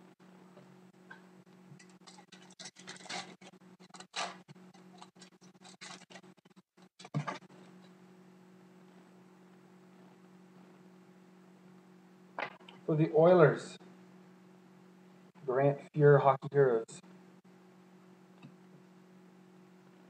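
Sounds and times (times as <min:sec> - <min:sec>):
steady low hum: 0:00.0 - 0:20.0
trading cards rustling: 0:01.8 - 0:06.3.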